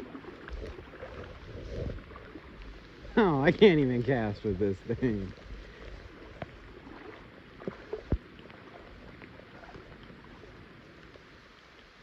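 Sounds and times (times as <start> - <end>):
rain tapping on boat: 0.0 - 9.2
steady rain hiss: 0.0 - 12.0.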